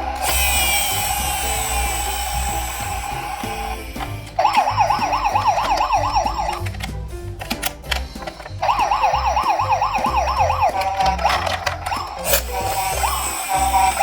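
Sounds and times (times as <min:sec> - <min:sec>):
background music with steady beat: 0:00.0 - 0:14.0
siren in fast yelp mode: 0:08.6 - 0:10.8.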